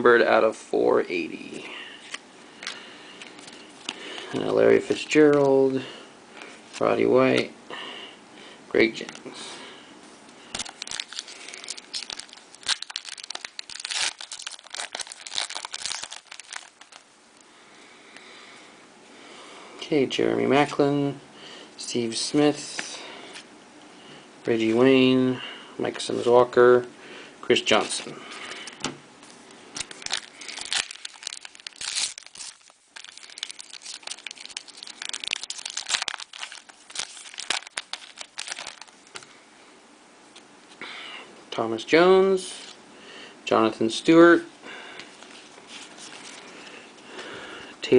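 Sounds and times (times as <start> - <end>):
wrapper crinkling and tearing: 10.5 - 17.1, 27.8 - 39.3, 45.2 - 46.6.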